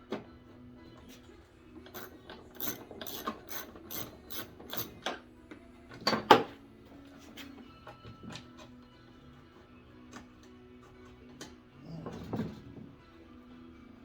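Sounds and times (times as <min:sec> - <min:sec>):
ratchet wrench clicking: 0:01.9 - 0:05.2.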